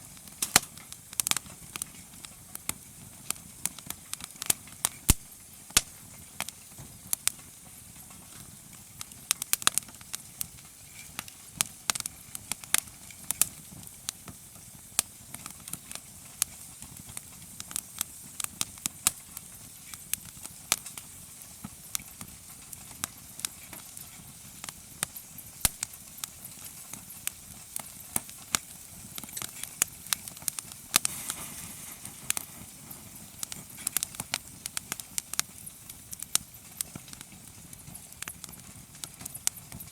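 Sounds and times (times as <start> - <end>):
campfire crackling and popping: 0.0 - 39.9
low rush of flame: 0.0 - 39.9.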